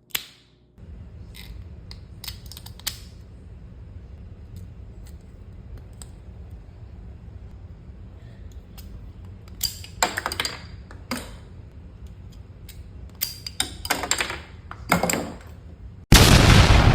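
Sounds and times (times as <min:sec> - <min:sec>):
plastic parts clicking and clattering: 0:09.5 - 0:11.5, 0:13.1 - 0:15.7.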